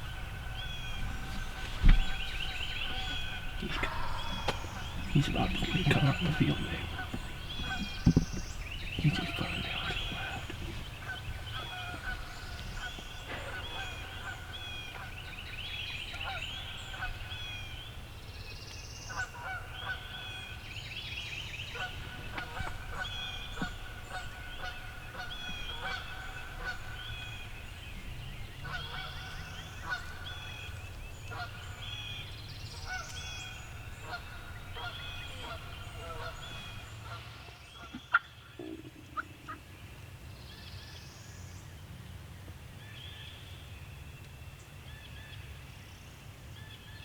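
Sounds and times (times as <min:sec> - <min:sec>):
steady low rumble: 0:00.0 - 0:16.0
birds calling: 0:00.0 - 0:47.0.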